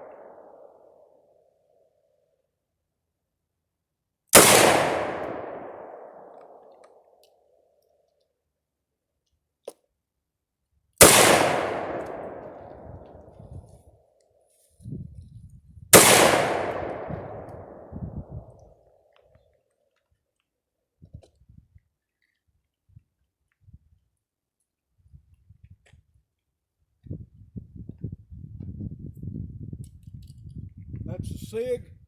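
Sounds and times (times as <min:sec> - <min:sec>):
rifle shots with echo: 0:00.0 - 0:01.0, 0:04.4 - 0:06.8, 0:11.0 - 0:13.5, 0:15.9 - 0:18.6.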